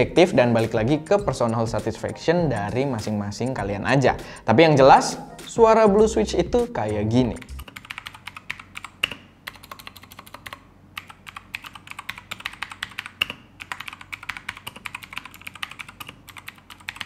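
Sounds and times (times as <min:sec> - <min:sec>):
clicky mechanical keyboard typing: 0:07.4 - 0:17.0.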